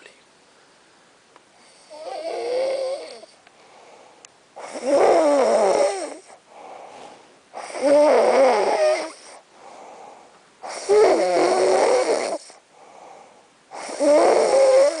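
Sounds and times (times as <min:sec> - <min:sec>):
person snoring: 0:01.6 - 0:03.4, 0:04.6 - 0:07.0, 0:07.6 - 0:12.6, 0:13.7 - 0:15.0
quiet breathing: 0:03.0 - 0:04.4, 0:06.1 - 0:07.8, 0:09.0 - 0:10.5, 0:12.4 - 0:13.7.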